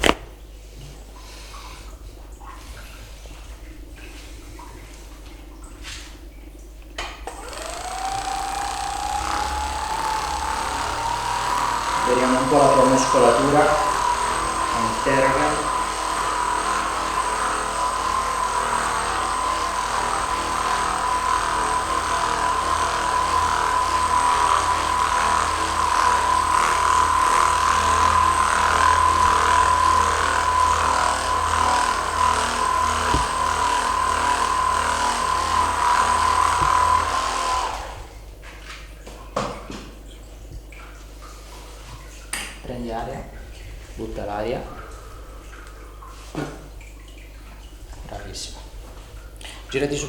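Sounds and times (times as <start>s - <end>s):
electric massager whine: 7.3s - 38.2s.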